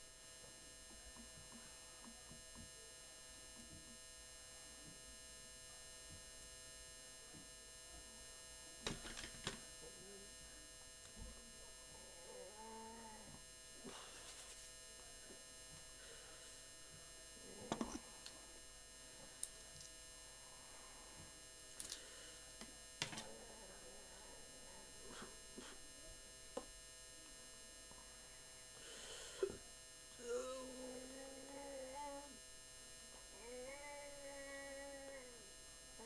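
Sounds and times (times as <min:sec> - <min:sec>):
steady electrical hum: 0:00.0 - 0:36.0.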